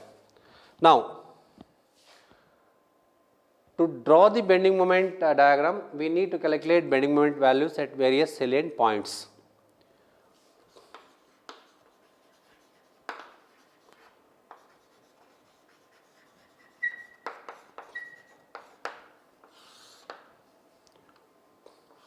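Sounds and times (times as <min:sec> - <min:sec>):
writing tool tapping and scratching: 0:10.7 - 0:20.3
writing tool squeaks: 0:16.4 - 0:18.5.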